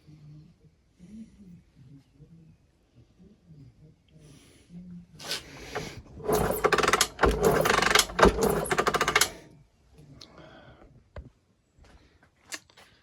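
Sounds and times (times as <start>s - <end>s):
motorcycle engine kicked over: 5.7s - 9.3s.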